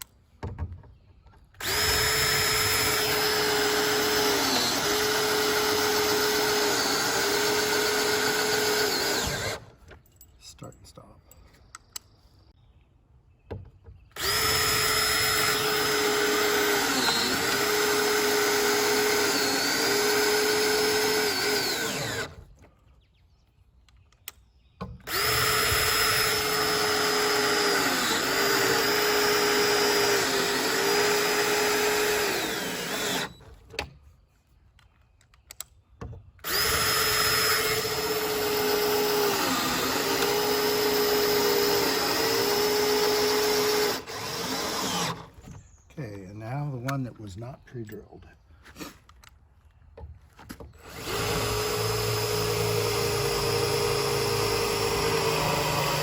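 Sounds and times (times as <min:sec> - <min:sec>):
power drill driving screws into wood: 0:01.6 - 0:09.8, 0:14.1 - 0:22.6, 0:24.8 - 0:33.9, 0:36.4 - 0:45.6, 0:50.5 - 0:56.0.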